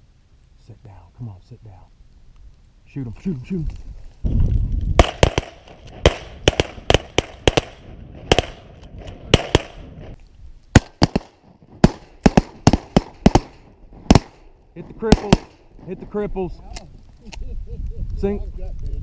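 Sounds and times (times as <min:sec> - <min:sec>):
shotguns firing: 0:05.0 - 0:16.0.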